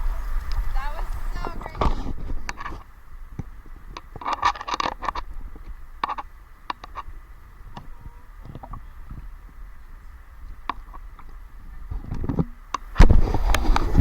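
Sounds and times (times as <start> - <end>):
wind rumble on microphone: 0.0 - 14.0
scattered knocks and scrapes: 1.4 - 7.1, 11.9 - 14.0.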